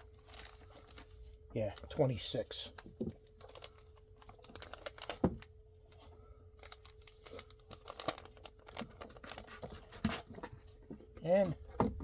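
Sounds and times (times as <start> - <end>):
comic books and packaging rustling: 0.0 - 12.0
faint steady hum: 0.0 - 12.0.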